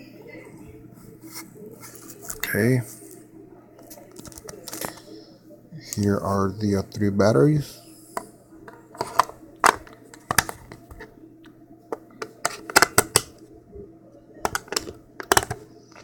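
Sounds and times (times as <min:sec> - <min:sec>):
batteries clicking into plastic: 0:14.5 - 0:16.0.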